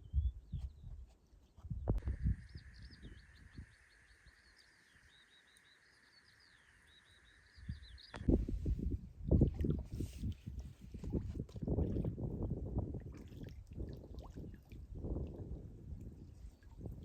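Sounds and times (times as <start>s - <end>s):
wind rumble on microphone: 0.0s - 5.2s, 7.4s - 17.0s
small birds chirping: 0.0s - 8.4s.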